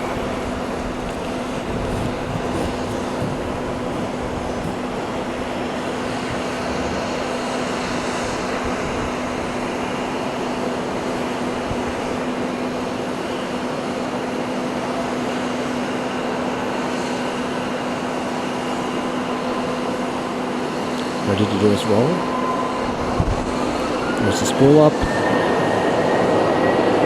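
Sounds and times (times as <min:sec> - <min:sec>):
jet engine idling: 0:00.0 - 0:27.0.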